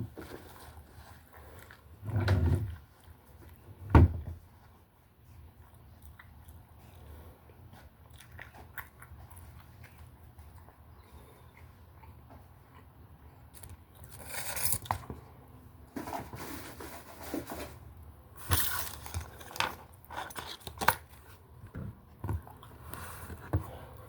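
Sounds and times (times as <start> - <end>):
eating sounds: 5.3 - 14.6.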